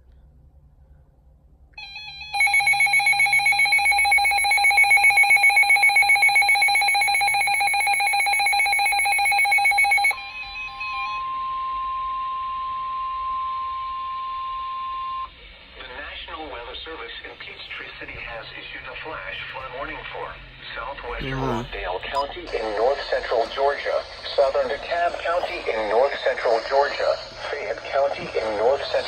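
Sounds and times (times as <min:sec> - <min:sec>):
steady warning alarm tone: 0:01.8 - 0:11.2.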